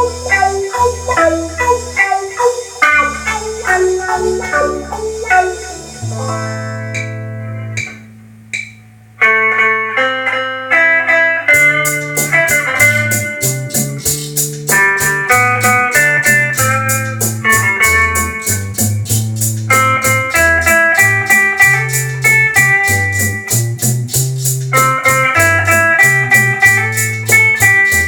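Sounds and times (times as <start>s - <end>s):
bass line: 0.0s - 28.0s
plucked string melody: 0.0s - 28.0s
steady drum beat: 11.6s - 28.0s.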